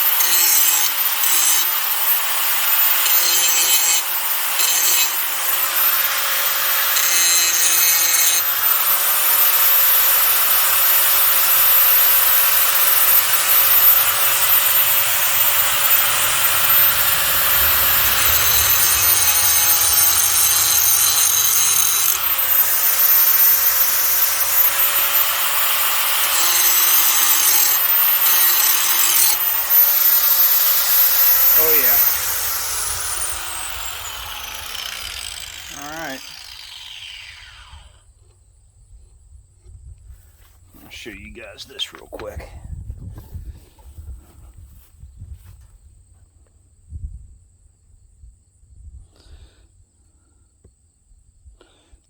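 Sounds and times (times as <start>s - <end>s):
angle grinder grinding steel: 0.0s - 38.0s.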